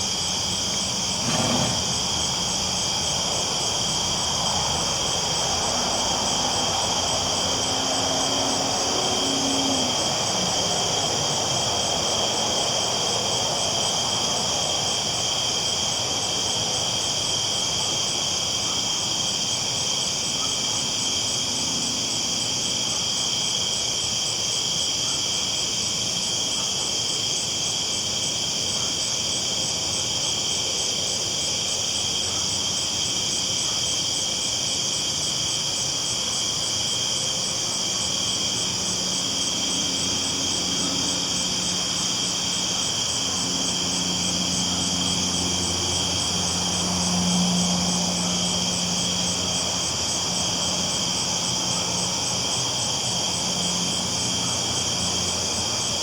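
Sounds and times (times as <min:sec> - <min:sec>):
crickets chirring: 0:00.0 - 0:56.0
low engine drone: 0:38.4 - 0:56.0.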